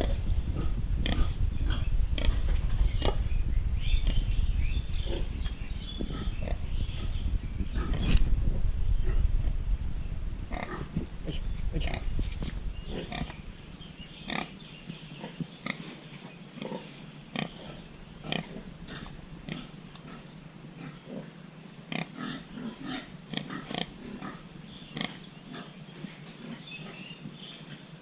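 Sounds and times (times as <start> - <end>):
pig grunting: 0.0 - 2.3, 10.5 - 12.1, 16.6 - 21.3.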